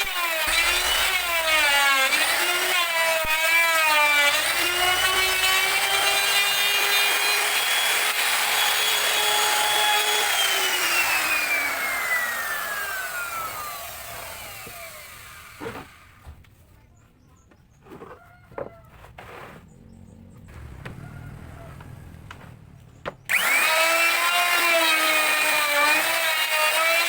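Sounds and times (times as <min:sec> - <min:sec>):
power tool motor running: 0:00.0 - 0:16.2, 0:23.3 - 0:27.0.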